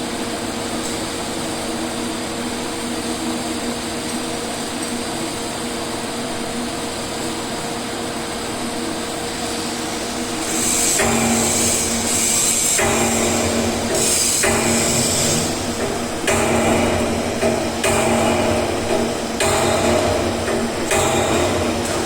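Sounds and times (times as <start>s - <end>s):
welding arc hissing: 9.9s - 22.0s.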